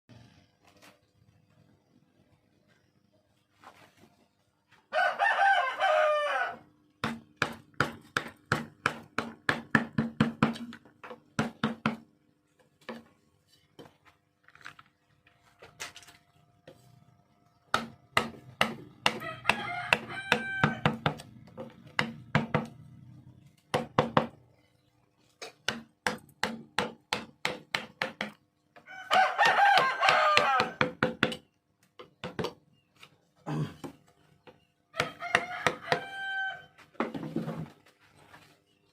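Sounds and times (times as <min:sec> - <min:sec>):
rooster crowing: 0:04.9 - 0:06.7, 0:19.1 - 0:21.1, 0:28.8 - 0:31.0, 0:34.9 - 0:36.8.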